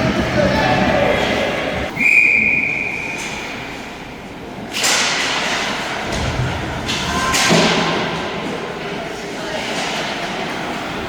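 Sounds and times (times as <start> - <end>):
crowd and rink noise: 0.0 - 11.0
referee's whistle: 1.9 - 3.4.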